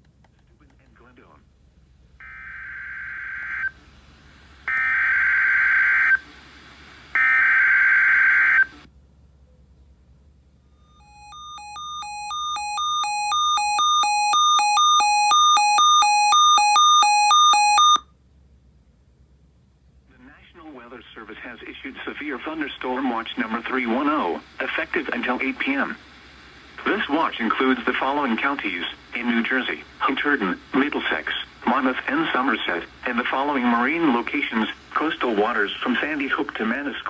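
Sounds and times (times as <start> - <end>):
buzzing digital data tones: 10.8 - 18.0
electronic two-tone alarm: 10.8 - 18.1.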